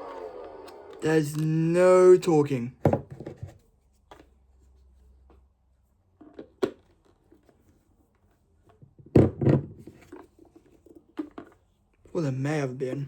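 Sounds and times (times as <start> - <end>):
plastic toy car knocks: 2.8 - 3.5, 9.0 - 9.8
plastic clunk: 2.8 - 3.6.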